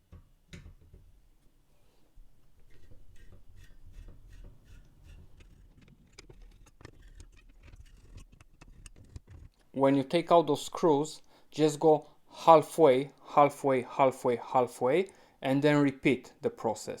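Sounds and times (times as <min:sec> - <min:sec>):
screwdriver clicks and scrapes: 0:02.7 - 0:09.6.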